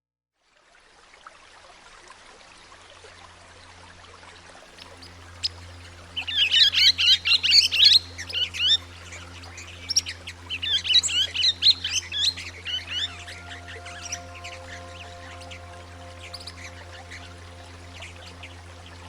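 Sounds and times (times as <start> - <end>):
steady low hum: 4.6 - 19.0.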